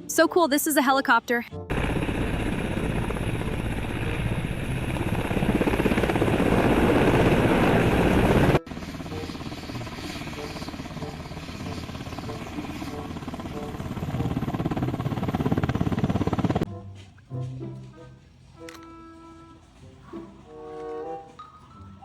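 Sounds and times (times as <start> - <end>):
helicopter rotor chopping: 0.8 - 16.7.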